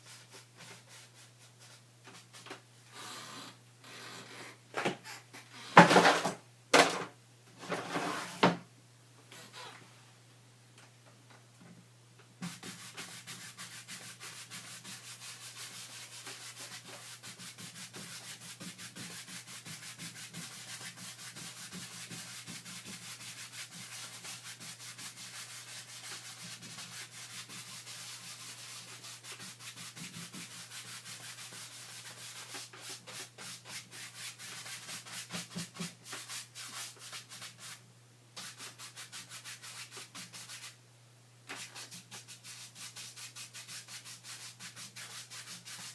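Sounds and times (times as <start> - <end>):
rapid rubbing strokes on surface: 12.4 - 37.8, 38.4 - 40.8, 41.5 - 45.9.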